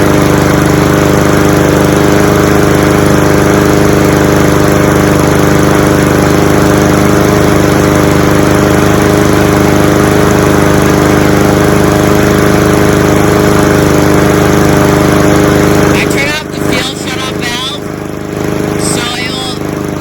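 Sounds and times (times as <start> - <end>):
lawnmower engine running: 0.0 - 20.0.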